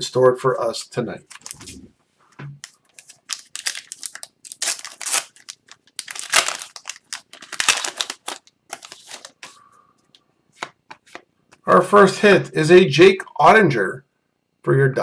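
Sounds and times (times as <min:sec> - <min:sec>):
foil wrappers crinkling and tearing: 0:01.3 - 0:01.8, 0:02.6 - 0:09.5.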